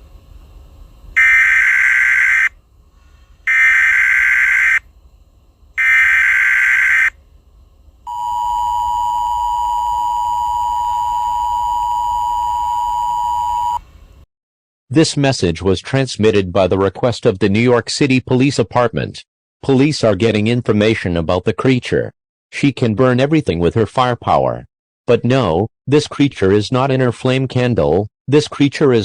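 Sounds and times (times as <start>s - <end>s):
screeching data tones: 1.2s - 2.6s, 3.5s - 4.8s, 5.8s - 7.2s.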